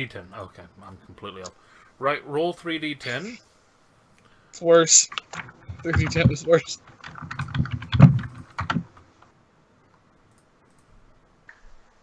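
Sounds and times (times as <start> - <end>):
small hard clicks and clatters: 5.0 - 9.3.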